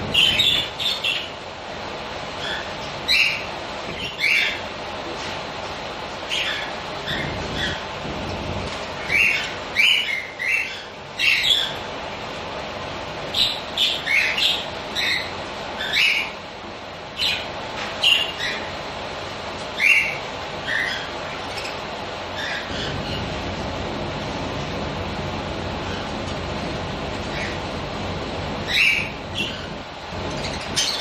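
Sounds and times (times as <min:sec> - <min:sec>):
budgerigars chirping and squawking: 0:00.0 - 0:01.4, 0:02.2 - 0:04.8, 0:06.2 - 0:12.0, 0:13.2 - 0:16.4, 0:17.1 - 0:18.9, 0:19.6 - 0:23.4, 0:27.1 - 0:27.7, 0:28.6 - 0:31.0
steady background noise: 0:00.0 - 0:31.0.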